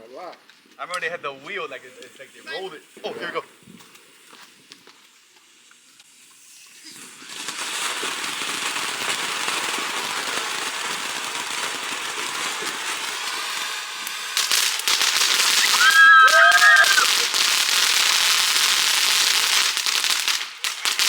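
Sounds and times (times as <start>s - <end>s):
firework hissing crackling spray: 1.3s - 21.0s
firework sharp bangs: 7.4s - 21.0s.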